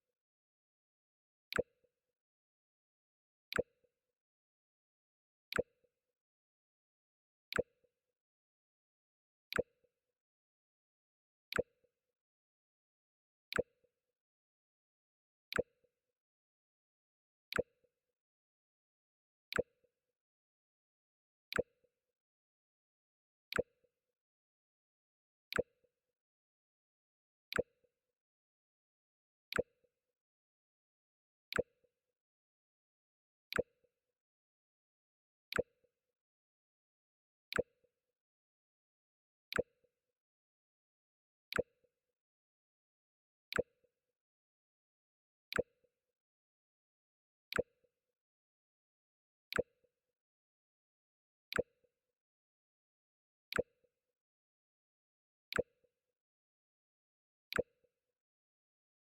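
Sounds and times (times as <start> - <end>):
click with brief low tone: 1.5 - 1.8, 3.5 - 3.8, 5.5 - 5.8, 7.5 - 7.8, 9.5 - 9.8, 11.5 - 11.8, 17.5 - 17.8, 19.5 - 19.8, 23.5 - 23.8, 25.5 - 25.8, 27.5 - 27.8, 29.5 - 29.8, 31.5 - 31.8, 33.5 - 33.8, 35.5 - 35.8, 37.5 - 37.8, 39.5 - 39.8, 41.5 - 41.9, 43.5 - 43.9, 45.5 - 45.9, 47.5 - 47.9, 49.4 - 49.9, 51.5 - 51.8, 53.4 - 53.9, 55.5 - 55.9, 57.4 - 57.9.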